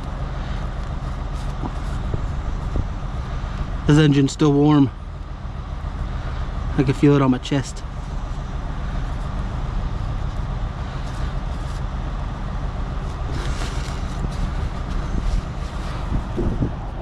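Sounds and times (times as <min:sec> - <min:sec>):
engine idling: 0:00.0 - 0:17.0
short rustle: 0:13.0 - 0:16.4
wind on microphone: 0:13.2 - 0:17.0.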